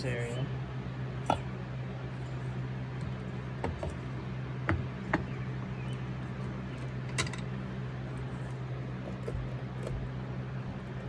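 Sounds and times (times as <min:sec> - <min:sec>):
steady low hum: 0:00.0 - 0:11.0
metal clicks and knocks at vise: 0:07.1 - 0:07.5.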